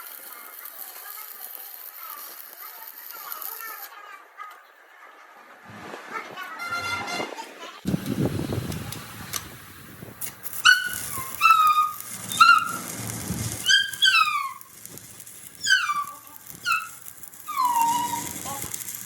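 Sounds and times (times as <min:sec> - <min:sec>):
busy background noise: 0:00.0 - 0:19.0
high-pitched animal calls: 0:10.6 - 0:12.9, 0:13.6 - 0:14.8, 0:15.6 - 0:18.8.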